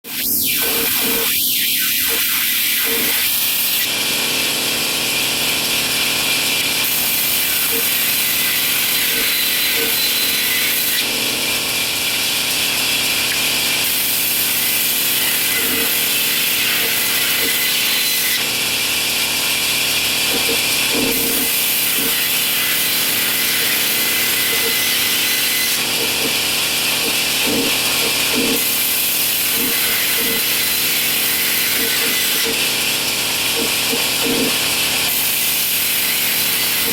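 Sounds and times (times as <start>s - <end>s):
power tool hissing on wood: 0.1s - 36.9s.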